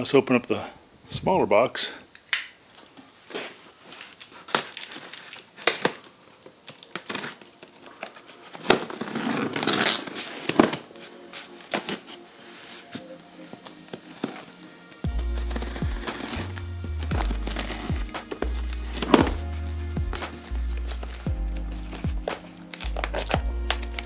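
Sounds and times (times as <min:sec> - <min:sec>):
paper crumpling and tearing: 0:20.4 - 0:24.0
packing material crinkling: 0:20.7 - 0:24.0.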